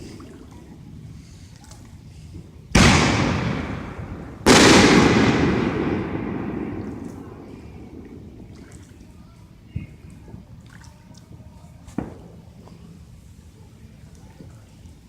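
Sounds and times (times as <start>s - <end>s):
fireworks bursting with echo: 2.7s - 8.7s.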